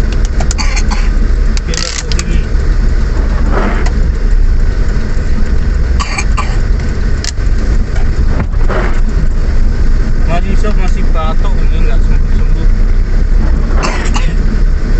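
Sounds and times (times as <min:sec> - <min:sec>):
engine and road rumble: 0:00.0 - 0:14.9.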